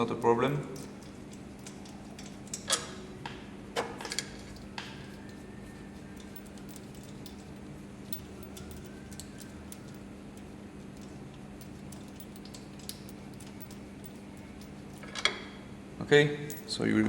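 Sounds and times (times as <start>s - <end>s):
small metal parts clicking: 0.0s - 3.0s, 4.0s - 15.4s
steady low hum: 0.0s - 17.0s.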